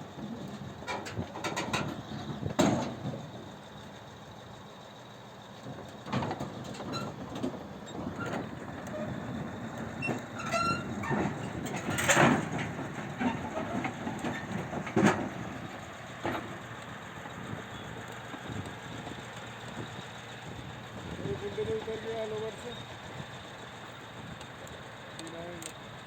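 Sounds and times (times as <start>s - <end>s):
low diesel rumble: 0.0s - 26.0s
crawler tracks clanking: 5.5s - 26.0s
brief squeal: 10.0s - 11.2s.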